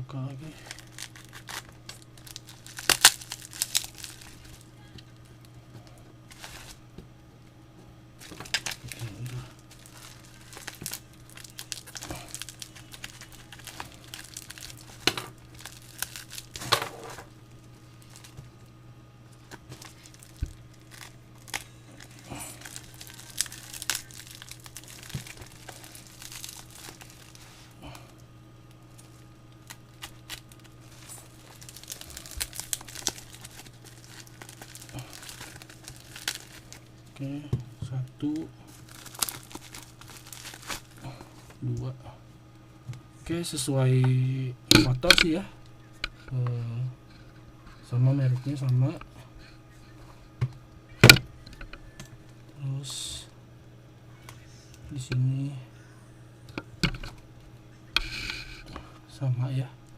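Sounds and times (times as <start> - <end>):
steady low hum: 0.0 - 59.9
plastic packaging crinkling: 0.4 - 5.6, 6.3 - 6.8, 8.2 - 37.4, 38.0 - 41.6
bubble wrap snaps: 0.6 - 5.2, 8.2 - 16.8, 19.3 - 27.7, 28.7 - 37.0, 38.7 - 41.6.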